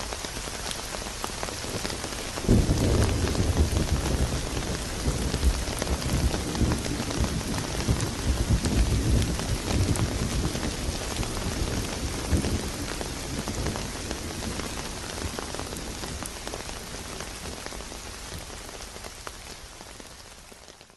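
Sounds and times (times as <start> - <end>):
steady rainfall: 0.0 - 20.9
low rumble of thunder: 1.6 - 16.7.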